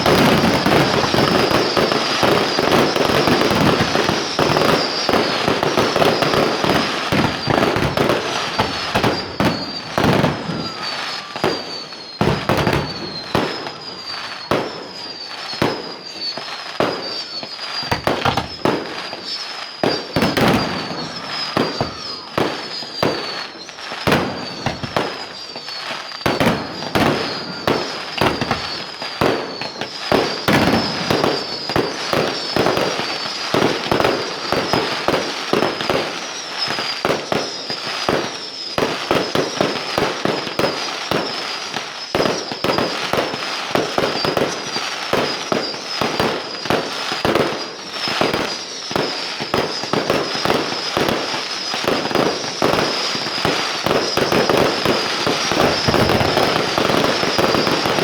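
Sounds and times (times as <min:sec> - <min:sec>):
high falling chirp: 0:00.0 - 0:34.9
fireworks bangs and crackling: 0:00.0 - 0:58.0.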